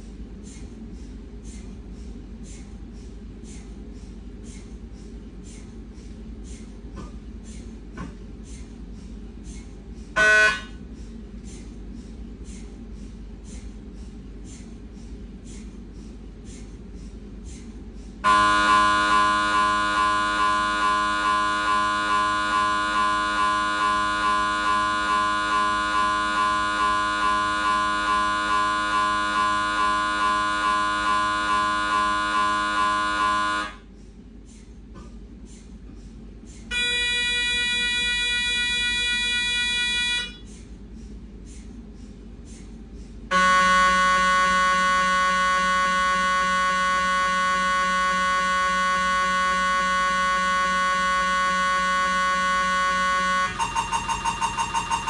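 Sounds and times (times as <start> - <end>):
mri scanner buzzing: 18.3 - 33.8, 43.3 - 55.0.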